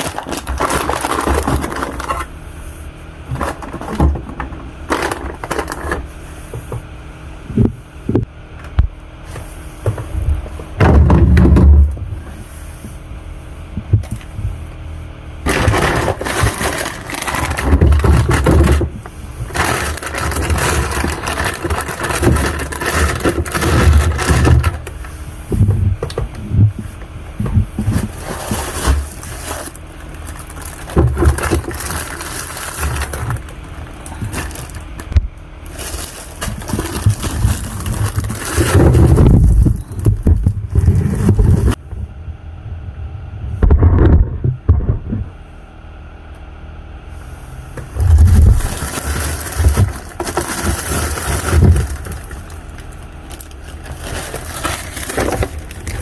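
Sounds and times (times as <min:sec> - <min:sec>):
plastic bags crinkling: 0:00.0 - 0:02.4, 0:03.3 - 0:06.0, 0:15.5 - 0:25.2, 0:27.5 - 0:41.8, 0:48.0 - 0:56.0.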